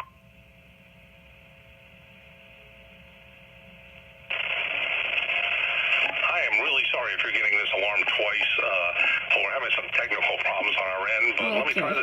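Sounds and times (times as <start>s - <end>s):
faint hiss with low hum: 0.1s - 12.0s
loud radio static: 11.3s - 12.0s.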